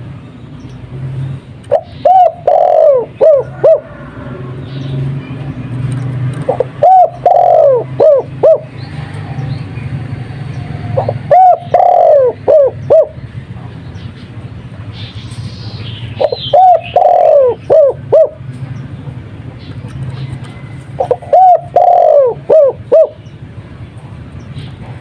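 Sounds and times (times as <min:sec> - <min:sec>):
dove cooing: 0:01.7 - 0:04.6, 0:06.4 - 0:08.9, 0:10.8 - 0:13.4, 0:16.2 - 0:18.4, 0:20.9 - 0:23.2.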